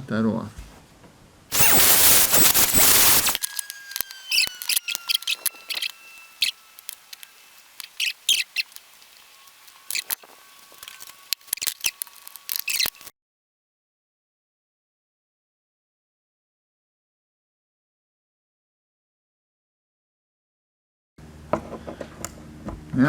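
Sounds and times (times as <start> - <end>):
faint thin ringing tone: 1.5 - 11.4
power tool grinding metal: 1.5 - 13.1.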